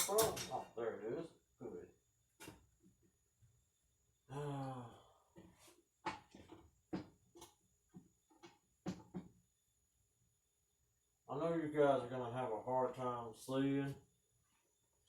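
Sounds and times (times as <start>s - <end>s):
clicks and knocks of hardware: 0.0s - 0.6s
man sighing: 4.3s - 5.2s.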